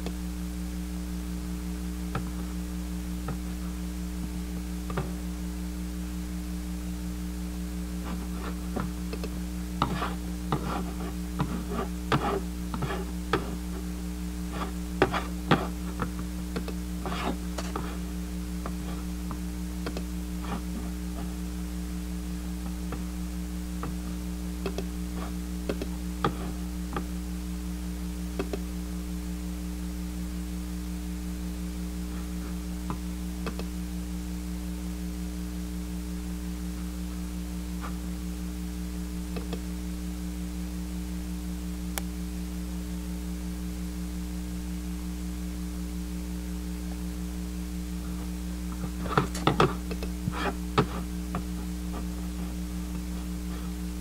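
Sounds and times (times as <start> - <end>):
low electrical hum: 0.0 - 54.0
faint clicks and taps: 4.9 - 5.2, 8.0 - 13.8, 14.5 - 18.0, 18.6 - 21.3, 24.6 - 27.1, 28.4 - 28.6, 32.8 - 33.7, 39.4 - 39.6, 48.7 - 53.7.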